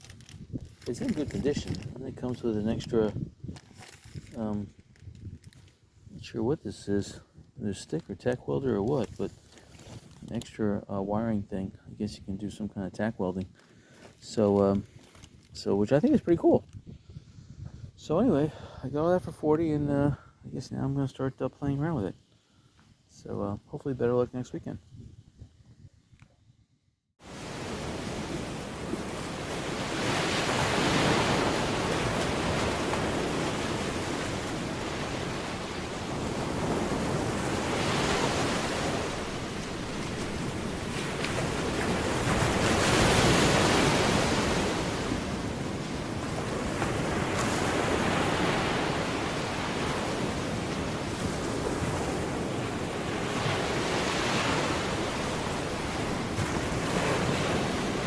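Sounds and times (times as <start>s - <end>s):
ocean waves washing: 0.8s - 3.1s, 27.2s - 58.0s.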